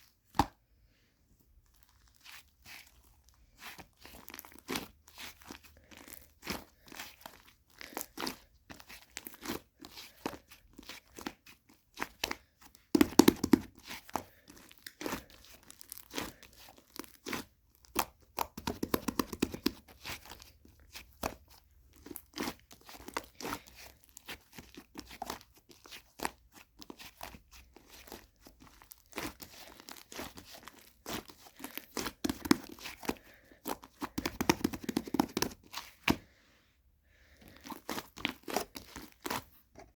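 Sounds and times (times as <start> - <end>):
slime crackling and popping: 28.0 - 33.1.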